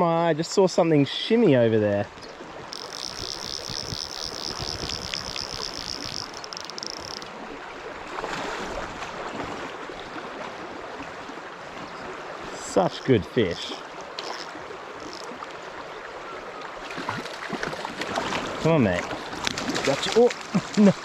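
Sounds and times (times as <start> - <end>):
stream running over stones: 1.5 - 21.0
high rapid chirring: 2.7 - 7.3, 14.2 - 15.3.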